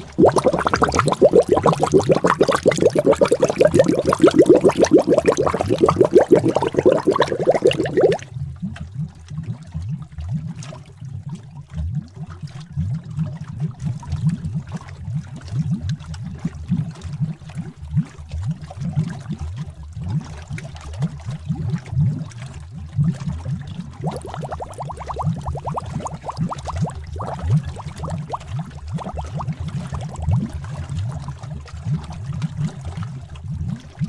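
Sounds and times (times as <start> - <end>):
higher faster burbling: 0.0 - 8.3, 24.0 - 30.2
thick liquid bubbling: 0.0 - 34.0.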